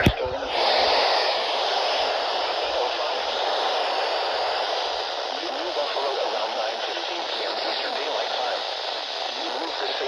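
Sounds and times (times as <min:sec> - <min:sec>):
faint voice: 0:00.0 - 0:03.9, 0:05.3 - 0:08.6, 0:09.2 - 0:10.0
radio static hiss: 0:00.0 - 0:10.0.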